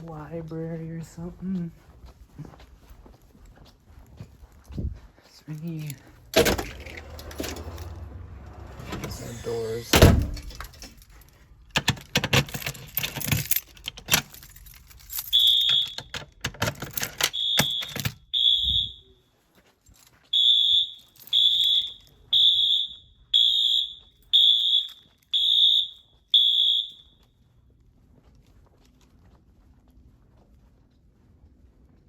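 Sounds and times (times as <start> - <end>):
fire alarm horns beeping: 15.2 - 16.4, 17.2 - 19.2, 20.3 - 27.4.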